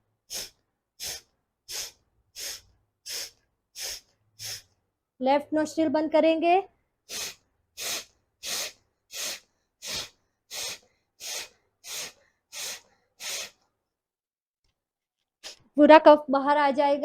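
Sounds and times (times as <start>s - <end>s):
forceful nasal exhalations: 0.2s - 4.8s, 7.0s - 13.7s, 15.4s - 15.7s.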